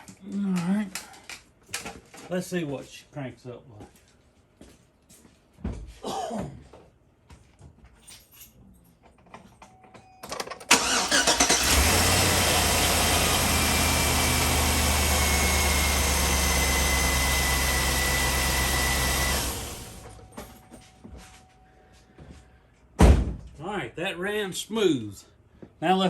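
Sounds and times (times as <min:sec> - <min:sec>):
car starter cranking: 0:10.6 - 0:20.2
car engine idling: 0:10.7 - 0:20.2.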